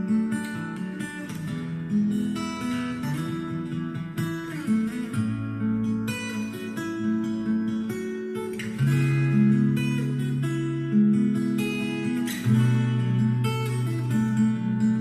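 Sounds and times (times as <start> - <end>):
acoustic guitar music: 0.0 - 15.0.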